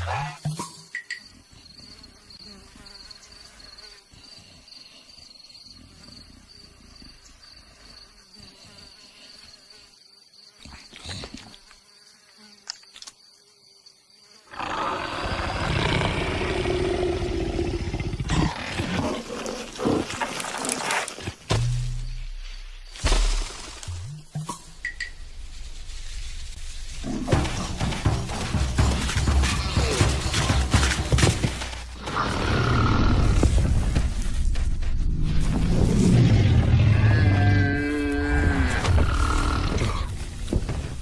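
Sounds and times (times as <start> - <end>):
animal roar: 14.5 - 20.9, 32.0 - 33.6, 35.9 - 40.2.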